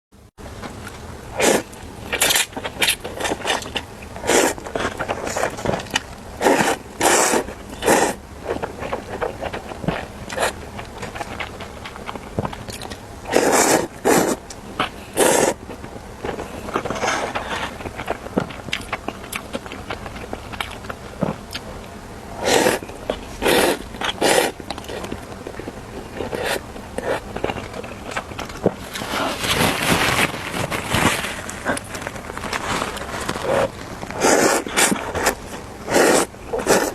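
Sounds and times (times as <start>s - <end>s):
chewing and mouth clicks: 0.8s - 21.9s, 22.5s - 29.0s
noodles being slurped: 1.4s - 21.7s, 22.4s - 25.3s, 26.0s - 36.9s.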